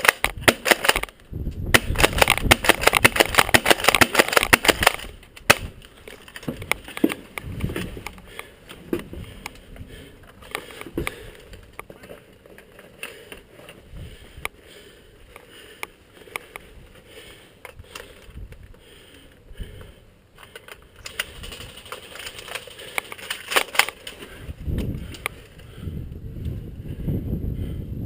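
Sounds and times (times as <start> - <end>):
sharp clicks and crunches: 0.0 - 14.6, 15.3 - 25.7
wind rumble on microphone: 1.2 - 3.6, 7.4 - 8.1, 13.8 - 14.5, 24.3 - 28.0.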